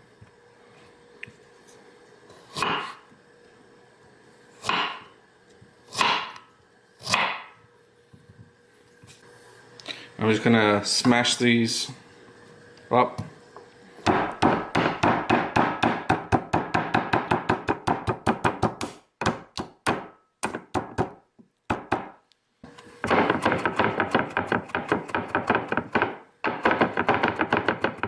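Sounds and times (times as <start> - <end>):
knife chopping on cutting board: 2.5 - 3.0, 4.6 - 5.0, 5.9 - 6.4, 7.0 - 7.5, 14.1 - 22.2, 23.0 - 28.0.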